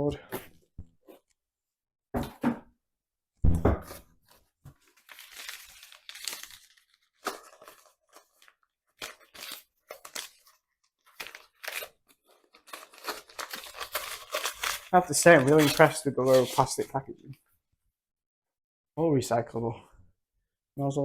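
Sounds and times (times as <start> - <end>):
cardboard rustling and tearing: 4.3 - 16.8.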